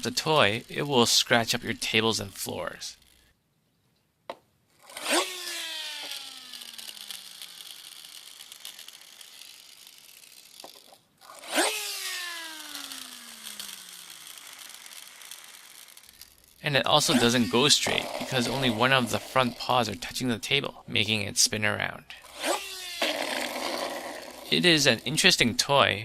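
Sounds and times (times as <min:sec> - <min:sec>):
toy flywheel whirring: 0:00.0 - 0:03.3, 0:04.8 - 0:20.6, 0:22.2 - 0:25.6
scratchy rasp: 0:17.0 - 0:19.7.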